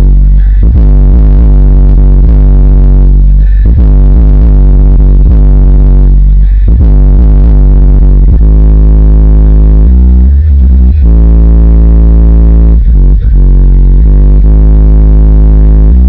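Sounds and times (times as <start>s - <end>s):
bass-heavy music through subwoofers: 0.0s - 16.0s.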